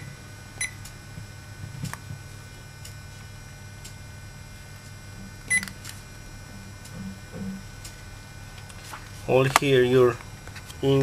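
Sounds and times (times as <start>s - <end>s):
multimeter electronic beep: 0.0s - 0.8s, 5.4s - 5.8s
faint steady hum: 0.0s - 11.0s.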